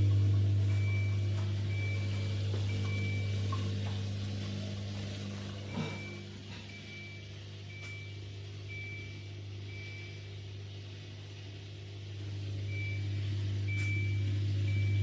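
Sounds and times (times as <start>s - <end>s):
dishwasher humming: 0.0s - 15.0s.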